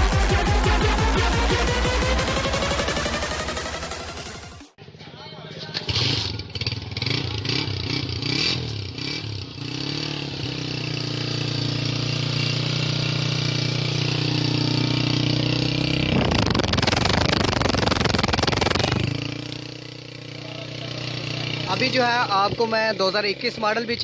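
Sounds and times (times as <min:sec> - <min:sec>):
loud rough rush of noise: 0:00.0 - 0:04.8, 0:13.2 - 0:19.9
motorcycle engine revving: 0:00.0 - 0:04.8, 0:05.7 - 0:24.0.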